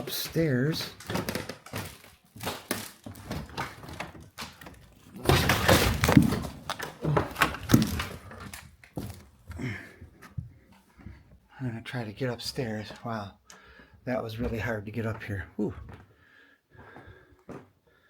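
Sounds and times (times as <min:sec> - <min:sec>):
knocks and thuds: 0:05.2 - 0:08.3
footsteps on stairs: 0:06.0 - 0:11.4, 0:12.8 - 0:18.0.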